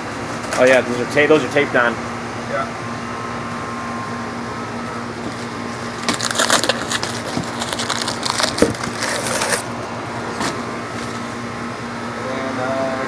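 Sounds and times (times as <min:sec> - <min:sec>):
cardboard packaging crackling: 0:05.8 - 0:09.8.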